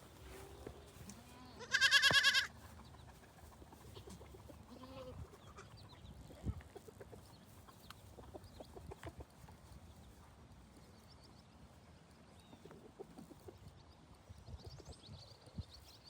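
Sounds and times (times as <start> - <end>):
goat bleating: 1.1 - 2.6, 4.0 - 5.7.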